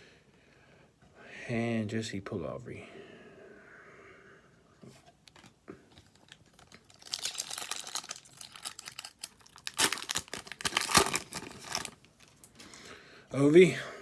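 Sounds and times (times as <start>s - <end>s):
wrapper crinkling and tearing: 6.0s - 12.6s.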